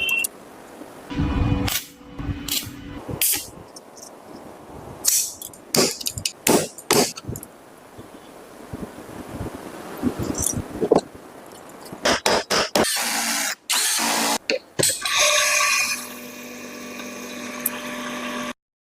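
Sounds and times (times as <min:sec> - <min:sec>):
small electric motor humming: 0:15.2 - 0:18.6.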